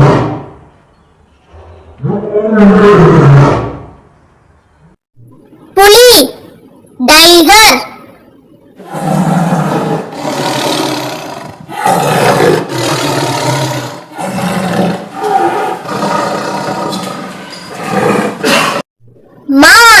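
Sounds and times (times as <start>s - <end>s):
tiger roaring and growling: 0.0s - 0.6s, 1.5s - 4.0s, 8.8s - 18.9s.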